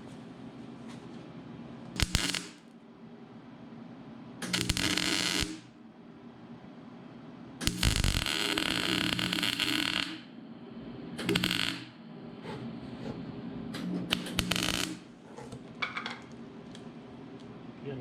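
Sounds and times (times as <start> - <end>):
welding arc crackling: 2.0 - 2.7, 4.4 - 5.7, 7.6 - 10.2, 11.2 - 11.9, 14.1 - 15.1.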